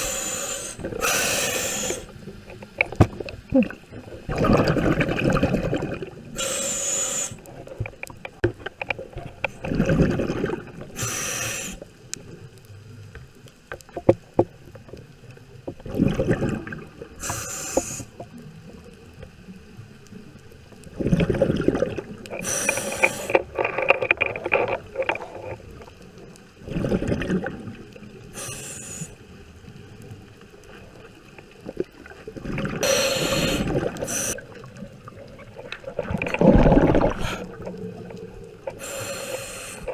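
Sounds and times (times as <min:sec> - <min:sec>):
regulator hissing: 0:00.0 - 0:02.2, 0:06.4 - 0:07.4, 0:11.0 - 0:11.8, 0:28.3 - 0:29.2
underwater bubbling: 0:00.0 - 0:39.9.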